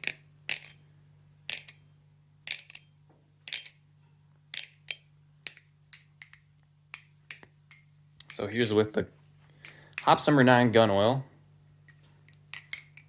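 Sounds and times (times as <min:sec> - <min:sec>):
butterfly knife handles clacking: 0:02.4 - 0:03.8, 0:04.5 - 0:09.0, 0:09.6 - 0:10.4, 0:11.8 - 0:13.0.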